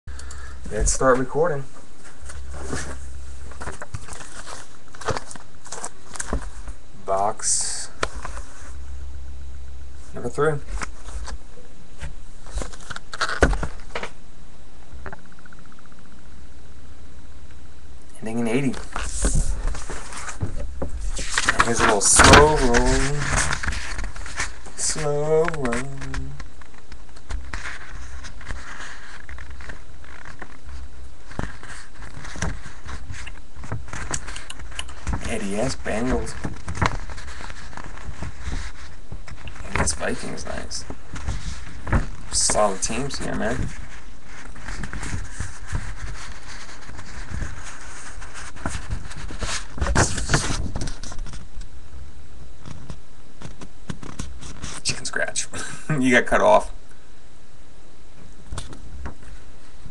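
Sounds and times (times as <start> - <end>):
steady low hum: 0.0 - 59.9
steady hiss: 0.1 - 59.9
cards sliding and rubbing: 2.0 - 6.7, 18.6 - 26.7, 27.3 - 51.4.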